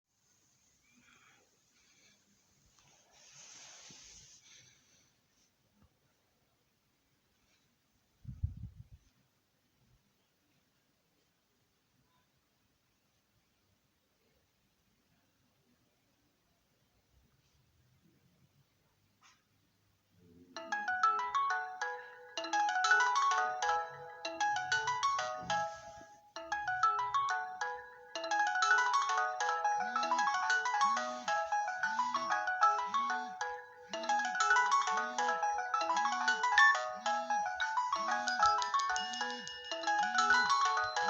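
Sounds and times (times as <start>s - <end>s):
phone alarm electronic melody: 20.6s - 41.0s.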